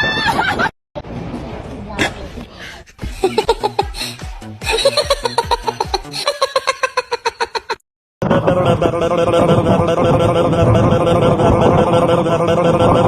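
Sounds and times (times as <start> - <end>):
bouncy plucked background music: 3.0 - 6.8.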